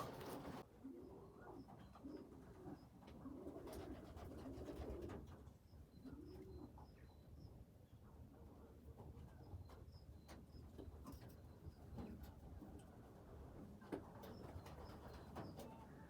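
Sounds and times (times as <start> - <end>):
pigeon cooing: 0.0 - 5.2.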